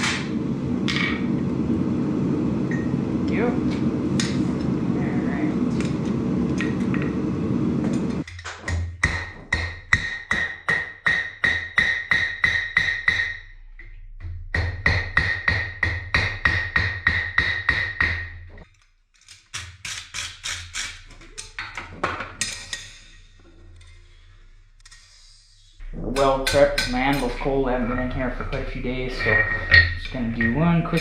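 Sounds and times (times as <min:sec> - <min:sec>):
hammer ringing on anvil: 0:26.2 - 0:31.0.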